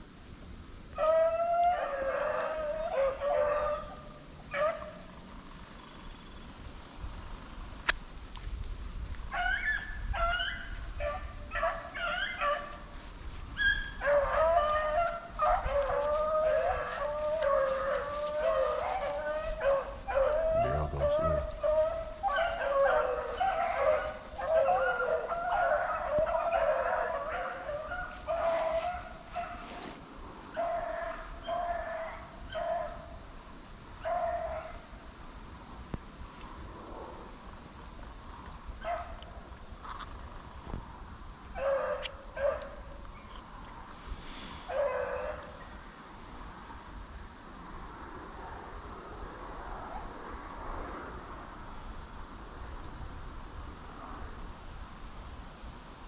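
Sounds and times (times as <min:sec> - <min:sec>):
hounds baying: 0:01.0 - 0:05.2, 0:09.3 - 0:13.0, 0:13.6 - 0:33.2, 0:34.0 - 0:34.9, 0:41.5 - 0:42.9, 0:44.6 - 0:45.8
sharp crack: 0:07.8 - 0:08.1.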